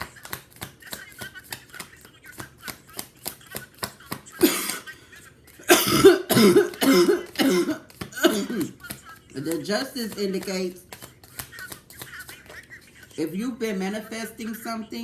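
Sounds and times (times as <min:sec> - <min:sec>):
woman coughing: 0:04.4 - 0:05.0, 0:05.6 - 0:08.8.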